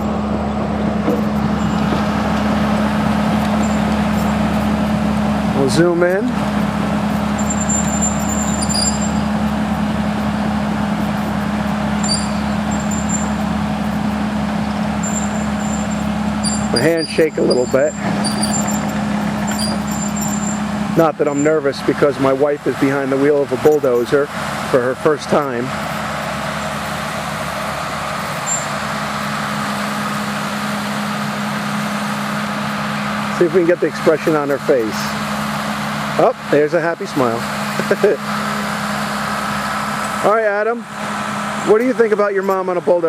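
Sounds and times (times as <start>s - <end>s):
bulldozer diesel engine droning: 0.0s - 43.0s
faint high squeaks: 7.4s - 9.3s, 12.0s - 13.4s, 15.0s - 20.6s, 28.3s - 28.7s.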